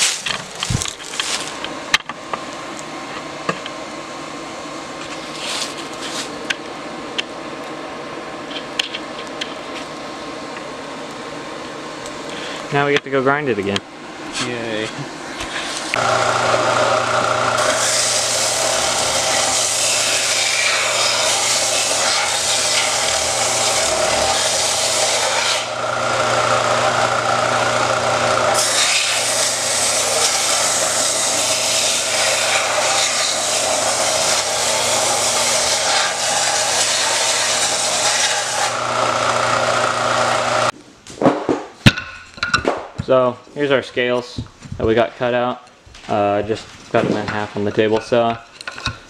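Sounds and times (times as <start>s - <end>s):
blade hissing against grinder: 15.4s - 27.3s, 28.0s - 38.8s
grinder motor hum: 15.9s - 40.7s.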